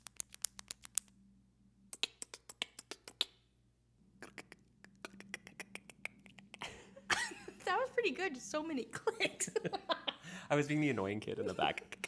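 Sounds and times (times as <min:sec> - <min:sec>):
rapid mouth clicks: 0:00.0 - 0:01.1, 0:01.9 - 0:03.4, 0:04.2 - 0:06.7, 0:11.8 - 0:12.0.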